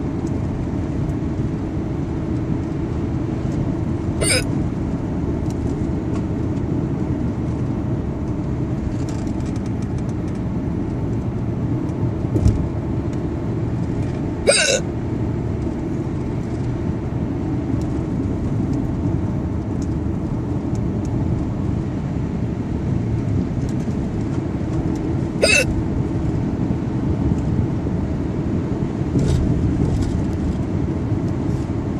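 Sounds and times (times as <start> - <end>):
steady low rumble: 0.0 - 31.9
person hiccuping: 4.2 - 4.5, 14.4 - 14.8, 25.4 - 25.8.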